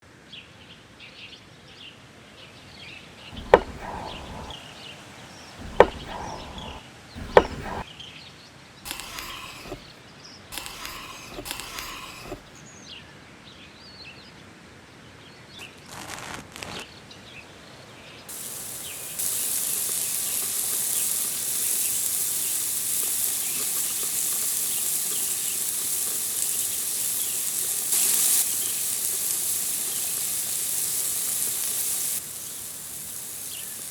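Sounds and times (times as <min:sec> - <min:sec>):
sausage sizzling in a pan: 0:03.4 - 0:04.6, 0:05.6 - 0:07.8, 0:08.9 - 0:09.9, 0:10.6 - 0:12.5, 0:18.3 - 0:33.9
sharp knocks: 0:03.4 - 0:04.6, 0:05.6 - 0:07.8.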